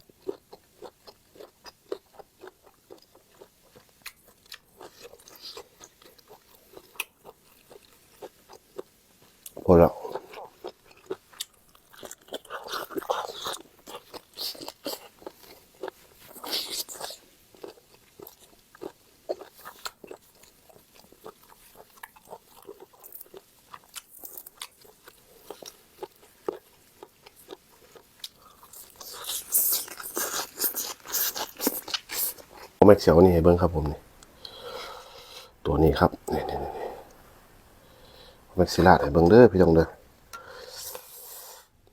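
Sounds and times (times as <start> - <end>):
person biting and chewing: 10.1 - 32.8.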